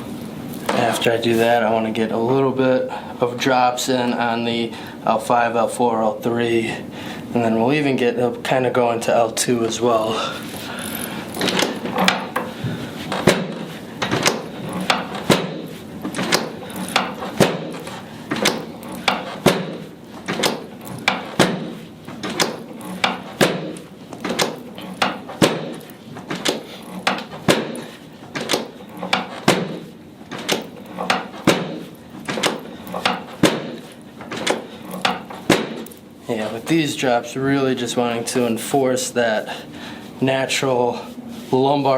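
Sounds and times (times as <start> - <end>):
drop table clacking: 11.4 - 12.5.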